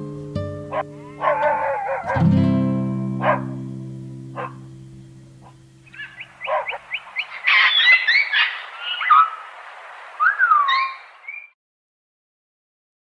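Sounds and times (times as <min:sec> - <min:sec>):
plucked guitar chord: 0:00.0 - 0:01.2, 0:02.1 - 0:05.8
songbird singing: 0:00.7 - 0:02.2, 0:03.2 - 0:11.6.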